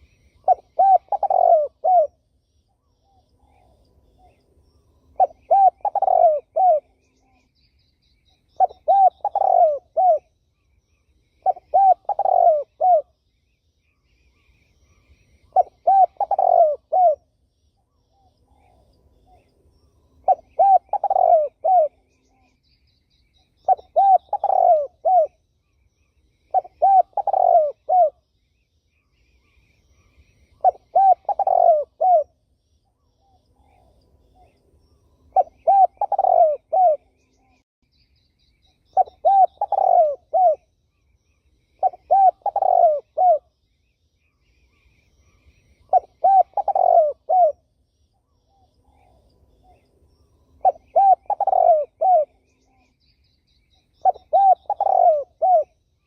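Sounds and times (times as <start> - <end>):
dove cooing: 0.0 - 2.2, 5.2 - 7.4, 8.6 - 10.3, 11.4 - 13.1, 15.5 - 17.2, 20.2 - 22.4, 23.6 - 25.4, 26.5 - 28.2, 30.6 - 32.3, 35.3 - 37.3, 38.9 - 40.7, 41.8 - 43.5, 45.3 - 47.6, 50.6 - 52.9, 54.0 - 55.8
high chirps of small birds: 0.0 - 56.0.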